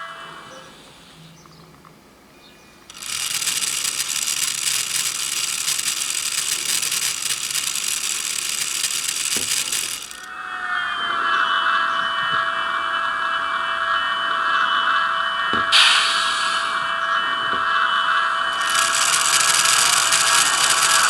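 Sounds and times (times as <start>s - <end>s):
model locomotive rattling clatter: 2.9s - 10.4s, 18.6s - 21.0s
steady whine: 2.9s - 10.6s, 18.4s - 21.0s.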